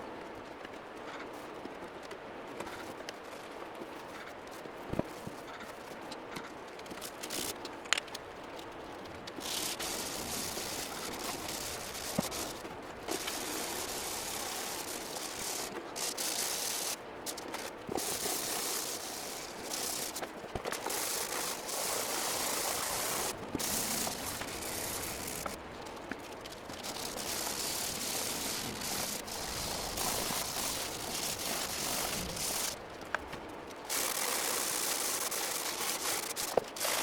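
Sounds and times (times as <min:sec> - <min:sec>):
spray paint can hissing: 0:09.4 - 0:25.6, 0:26.6 - 0:32.8, 0:33.9 - 0:37.0.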